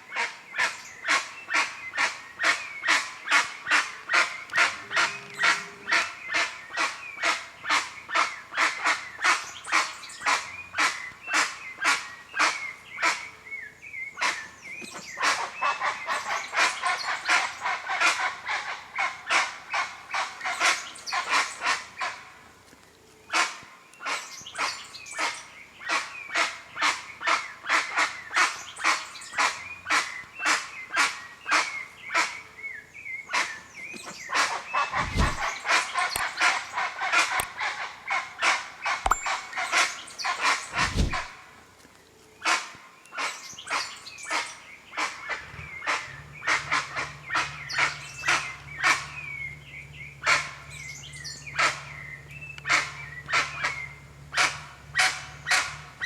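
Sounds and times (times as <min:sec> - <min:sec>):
birds harsh bark-like calls: 0:33.4 - 0:38.1, 0:40.0 - 0:41.3.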